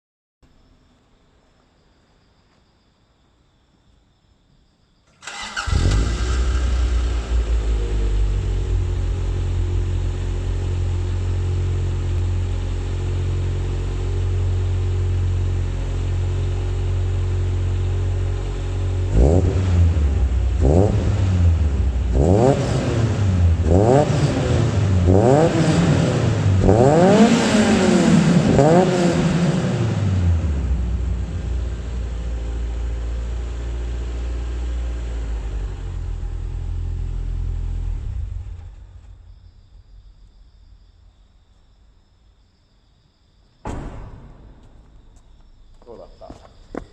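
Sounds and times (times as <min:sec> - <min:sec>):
car engine starting and idling: 0:05.1 - 0:42.0
engine revving: 0:05.2 - 0:39.3.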